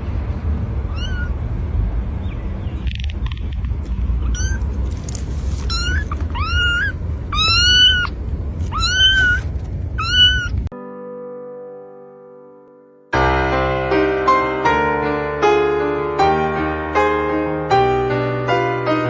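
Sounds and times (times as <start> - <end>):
low rumbling background: 0.0 - 10.7
cat meowing: 0.9 - 1.4, 4.2 - 4.8, 5.6 - 10.7
held keyboard chord: 10.7 - 19.0.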